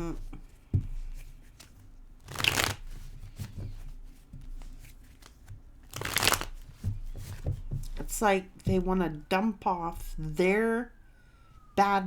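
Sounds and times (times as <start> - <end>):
cards being shuffled: 0.2 - 8.0
soft clicks of card handling: 4.4 - 6.5.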